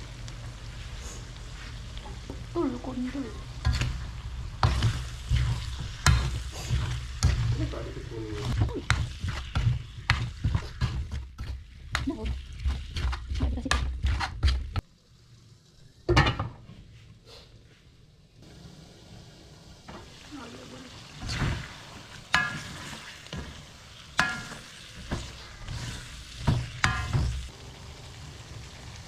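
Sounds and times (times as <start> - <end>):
food sizzling: 0.0 - 29.0
metal spatula scraping in pan: 3.0 - 11.6, 21.2 - 27.5.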